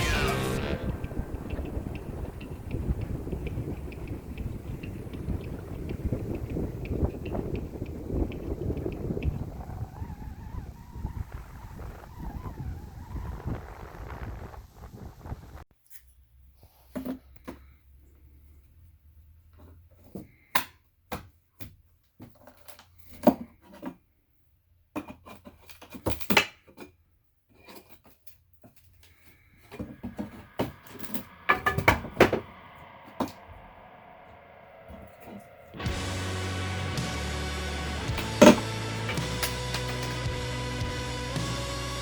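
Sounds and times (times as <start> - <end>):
hard objects knocking: 29.7 - 33.4.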